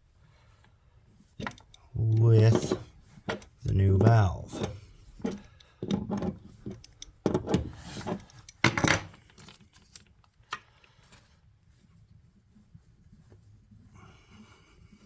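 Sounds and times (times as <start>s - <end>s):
faint background hum: 0.0s - 11.9s
clicks and knocks on plumbing parts: 4.5s - 9.1s.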